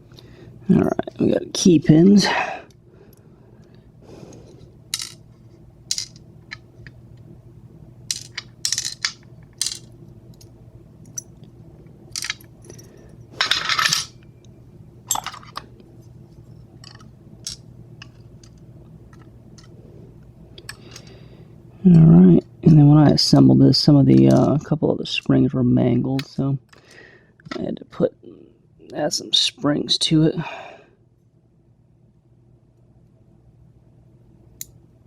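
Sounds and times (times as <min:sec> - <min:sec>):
small pins clattering: 0:04.9 - 0:05.2, 0:05.9 - 0:07.0, 0:08.1 - 0:11.5, 0:12.1 - 0:14.2, 0:15.1 - 0:15.7
metal lock pins clinking: 0:08.1 - 0:11.4, 0:12.1 - 0:14.2, 0:15.1 - 0:15.7.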